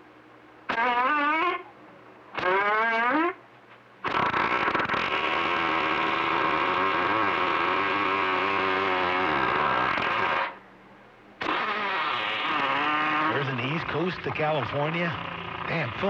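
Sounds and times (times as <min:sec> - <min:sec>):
distorted radio buzzing tone: 0:04.0 - 0:10.6, 0:11.4 - 0:16.0.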